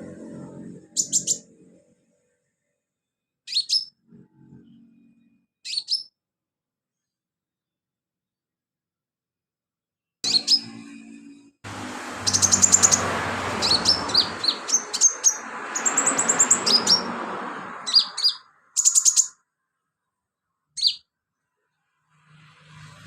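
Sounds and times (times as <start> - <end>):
bird chirping and trilling: 0.0 - 1.8, 3.4 - 4.0, 5.6 - 6.2, 10.2 - 11.2, 11.9 - 19.4, 20.8 - 21.1.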